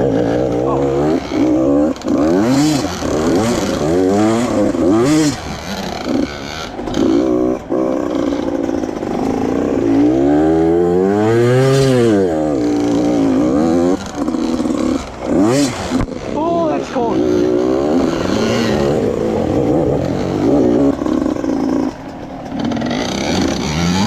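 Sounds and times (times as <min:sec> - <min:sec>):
dirt bike engine revving: 0:00.0 - 0:24.0.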